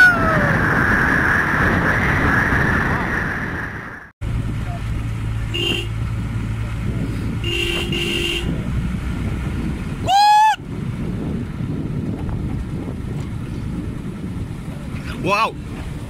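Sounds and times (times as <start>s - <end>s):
car engine running: 4.2s - 9.9s
car horn toots: 5.5s - 6.0s, 7.4s - 8.6s.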